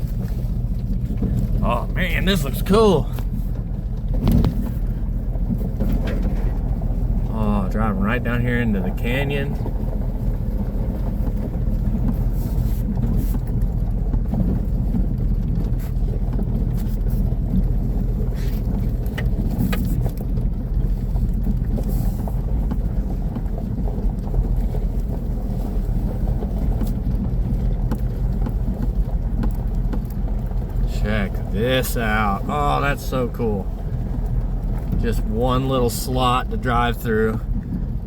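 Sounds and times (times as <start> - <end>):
vehicle engine drone: 0.0 - 38.0
knocks and rattles over rock: 3.2 - 7.3.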